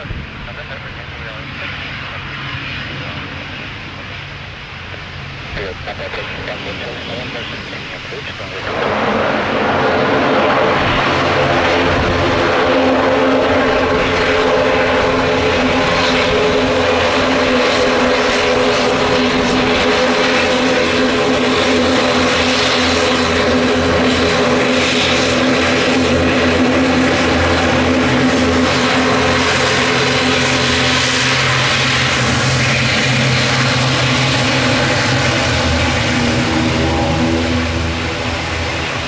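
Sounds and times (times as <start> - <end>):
turboprop engines droning: 0.0 - 39.0.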